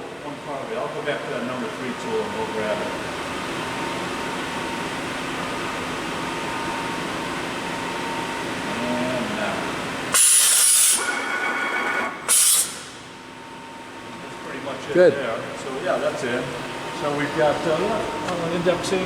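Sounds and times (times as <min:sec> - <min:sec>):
machine hum: 0:00.0 - 0:19.0
compressed air hiss: 0:10.2 - 0:11.2, 0:12.3 - 0:13.0.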